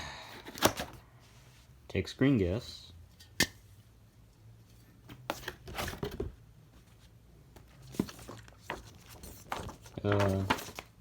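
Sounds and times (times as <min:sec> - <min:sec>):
packaging rustling and clicking: 0:07.6 - 0:11.0.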